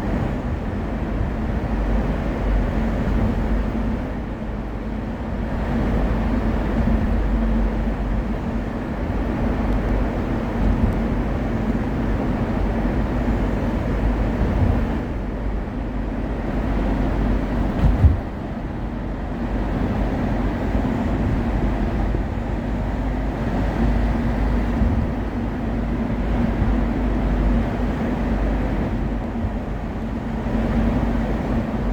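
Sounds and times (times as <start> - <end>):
road traffic rumble inside car: 0.0 - 31.9
short thump: 17.8 - 18.2.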